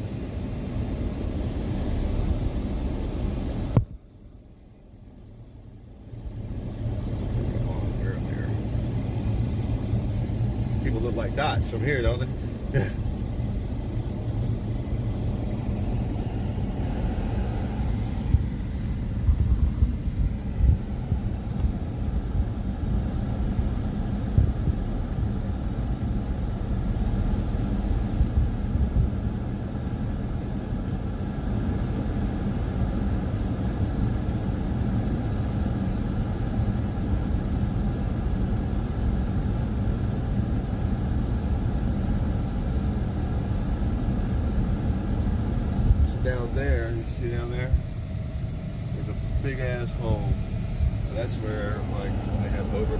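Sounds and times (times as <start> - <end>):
low outdoor rumble: 0.0 - 52.9.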